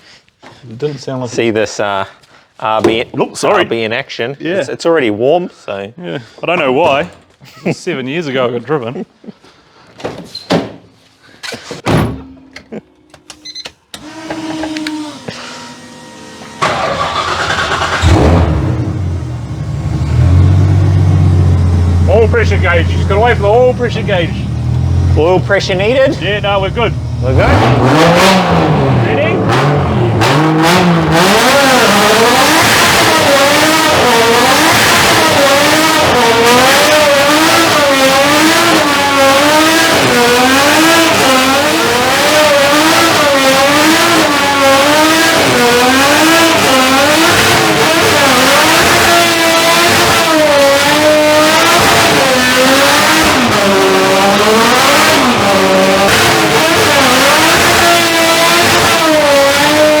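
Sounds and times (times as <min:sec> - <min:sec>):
spinning tyres hissing: 0:14.0 - 0:23.0
car engine revving high: 0:14.0 - 1:00.0.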